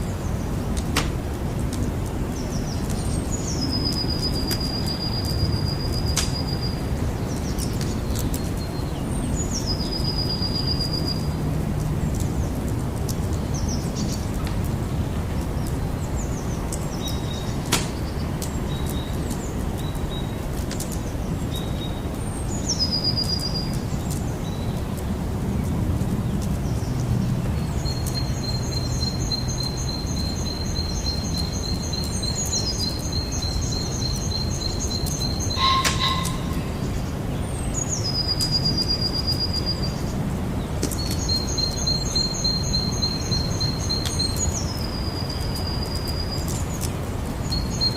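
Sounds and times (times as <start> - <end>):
campfire crackling: 0.0 - 10.0, 11.2 - 39.3
wildlife chirping and trilling: 32.3 - 37.1.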